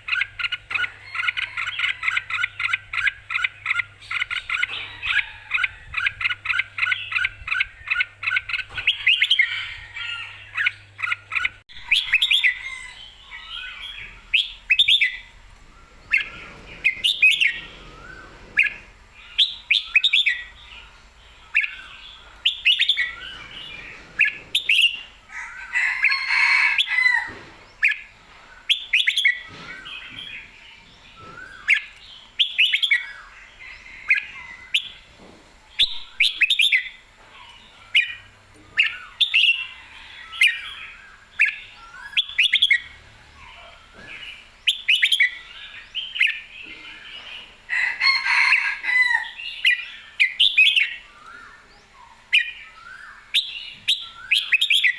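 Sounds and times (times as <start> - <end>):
bulbul singing whistled phrases: 49.6 - 54.9.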